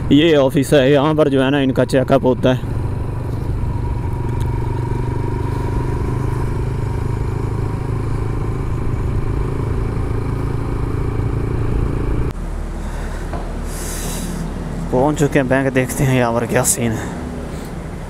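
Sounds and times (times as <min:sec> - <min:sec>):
motorcycle engine running: 0:00.0 - 0:16.7
road and wind noise: 0:00.0 - 0:18.0.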